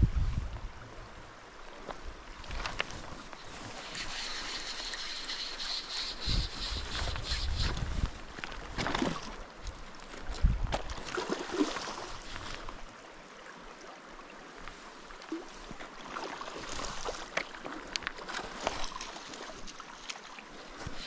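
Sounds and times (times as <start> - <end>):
river water splashing: 8.2 - 21.0.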